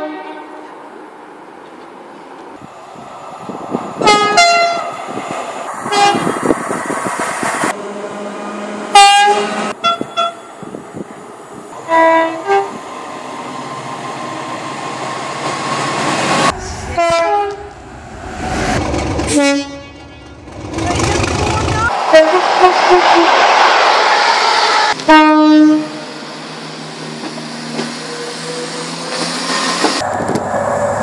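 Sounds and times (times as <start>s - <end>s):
locomotive air horn blasts: 0.0s - 0.7s, 4.0s - 4.9s, 5.9s - 6.3s, 7.8s - 10.6s, 11.8s - 12.8s, 17.0s - 17.7s, 19.3s - 20.3s, 22.0s - 23.3s, 25.0s - 26.0s
rumble of moving trains: 0.0s - 31.0s.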